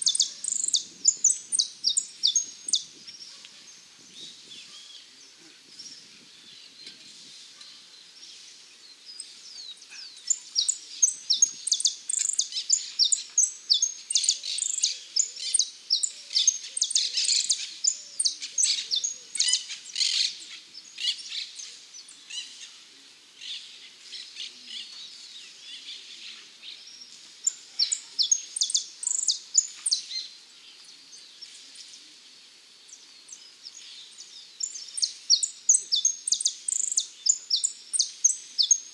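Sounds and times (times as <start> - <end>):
finch singing high chirps: 0.0 - 2.9, 10.2 - 20.2, 27.4 - 30.0, 34.6 - 38.9.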